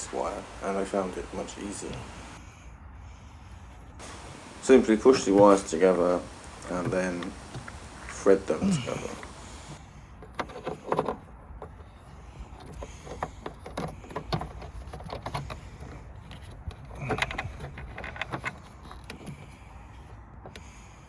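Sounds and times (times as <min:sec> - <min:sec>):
clicks and rustles of wiring: 0:09.0 - 0:21.0.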